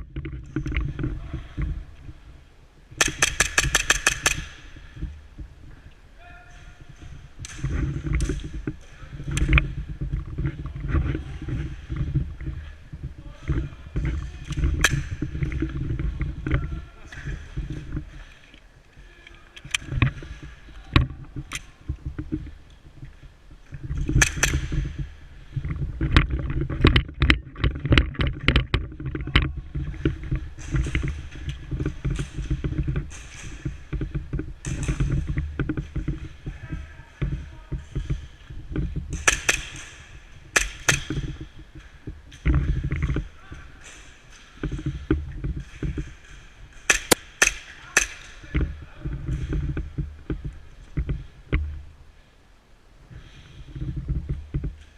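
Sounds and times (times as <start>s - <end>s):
airsoft gunshots: 3.0s - 4.7s.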